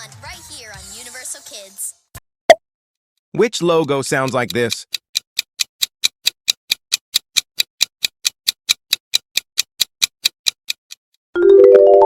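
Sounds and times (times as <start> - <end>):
clock ticking: 3.4 - 11.0.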